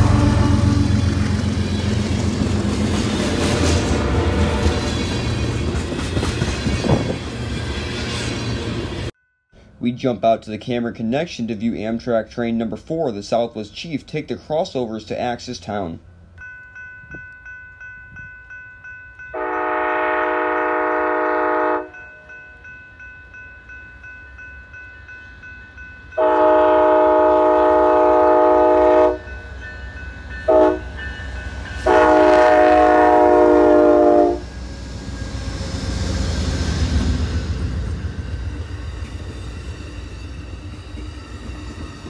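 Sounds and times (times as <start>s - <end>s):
locomotive horn: 0.0s - 1.0s, 3.4s - 4.9s, 19.4s - 22.0s, 26.2s - 29.3s, 30.5s - 31.0s, 31.8s - 34.5s
train rumble: 0.0s - 9.2s, 24.4s - 42.0s
crossing bell ringing: 16.1s - 35.4s.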